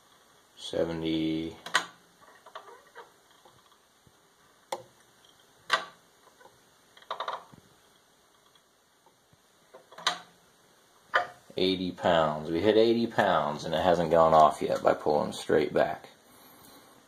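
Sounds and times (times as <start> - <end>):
sharp clicks and creaks: 1.6 - 3.8, 4.7 - 7.6.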